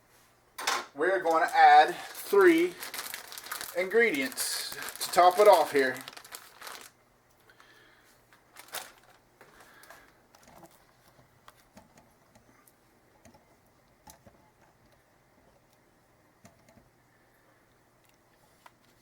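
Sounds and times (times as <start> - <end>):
food packaging rustling: 1.0 - 11.9.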